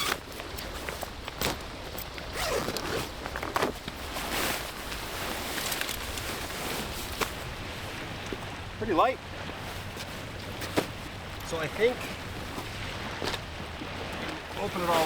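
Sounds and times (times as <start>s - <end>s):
zipper being pulled open: 0.0s - 0.3s, 2.3s - 4.7s.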